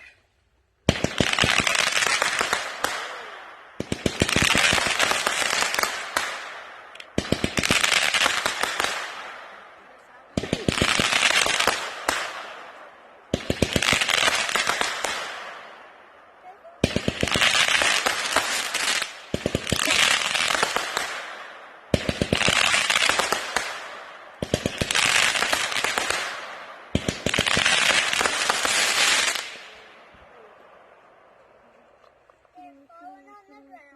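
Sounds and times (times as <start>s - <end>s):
firework crackle: 0.8s - 30.6s
firework launch reports: 0.9s - 15.8s.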